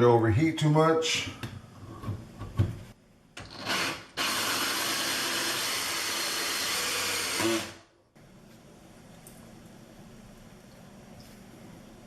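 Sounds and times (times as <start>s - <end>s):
drill hole saw cutting whir: 3.4s - 7.8s.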